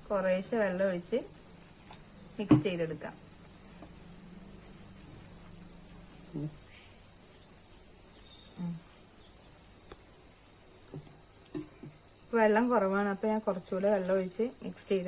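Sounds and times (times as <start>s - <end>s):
insects chirring: 0.0s - 15.0s
small bird chirping: 3.8s - 9.6s.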